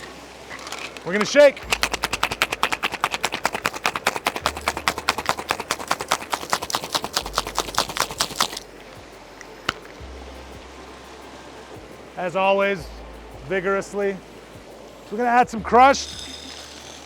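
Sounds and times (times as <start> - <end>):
ice rattling in cocktail shaker: 0.0 - 8.7.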